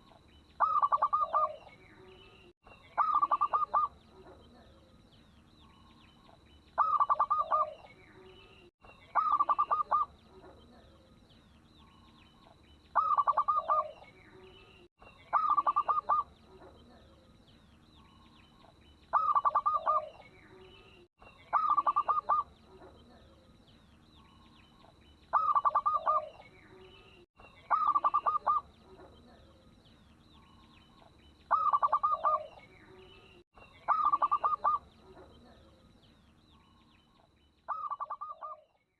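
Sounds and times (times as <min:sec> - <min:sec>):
dove cooing: 0:00.6 - 0:01.8, 0:03.0 - 0:04.8, 0:06.8 - 0:07.9, 0:09.1 - 0:11.0, 0:13.0 - 0:14.1, 0:15.3 - 0:17.2, 0:19.1 - 0:20.6, 0:21.5 - 0:23.3, 0:25.3 - 0:26.8, 0:27.7 - 0:29.5, 0:31.5 - 0:32.7, 0:33.8 - 0:35.8, 0:37.7 - 0:38.7.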